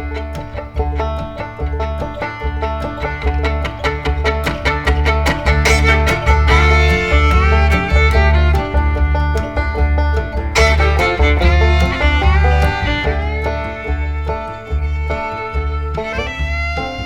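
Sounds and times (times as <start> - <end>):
quick plucked string notes: 0.0 - 17.0
steady bass beat: 0.0 - 17.0.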